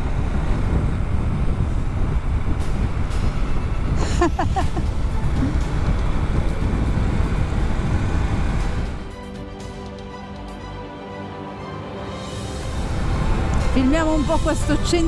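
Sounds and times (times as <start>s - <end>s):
wind noise on microphone: 0.0s - 9.2s.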